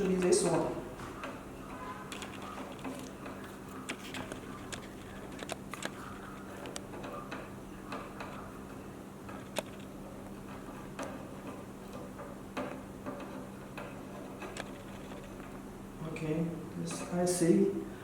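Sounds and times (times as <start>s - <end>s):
steady low hum: 0.0s - 18.0s
hand tools clicking and tapping: 2.1s - 15.6s.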